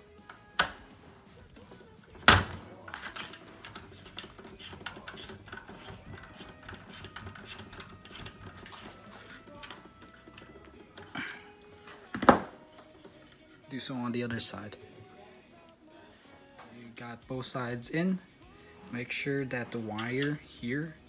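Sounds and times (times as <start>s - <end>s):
small hard parts clicking: 1.6s - 13.4s.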